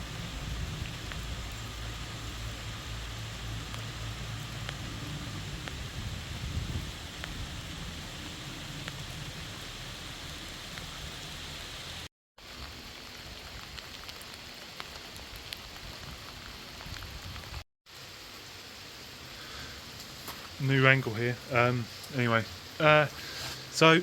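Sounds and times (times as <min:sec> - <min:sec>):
raindrops ticking: 0:00.0 - 0:17.4
steady rain falling: 0:00.0 - 0:24.0.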